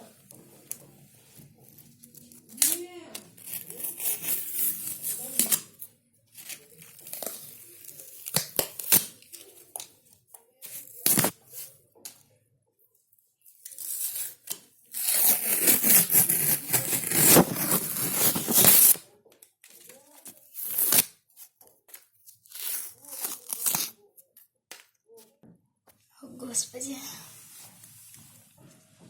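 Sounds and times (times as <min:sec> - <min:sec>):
wallpaper tearing: 0:02.5 - 0:05.8, 0:10.8 - 0:11.3, 0:13.7 - 0:19.0, 0:20.4 - 0:21.2, 0:22.4 - 0:24.0.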